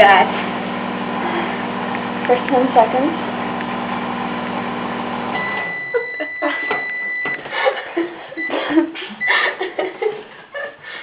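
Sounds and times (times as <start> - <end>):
microwave oven humming: 0.0 - 9.8
long microwave beep: 5.2 - 7.5, 8.4 - 8.6, 9.2 - 9.6
short keypad beeps: 5.4 - 7.4.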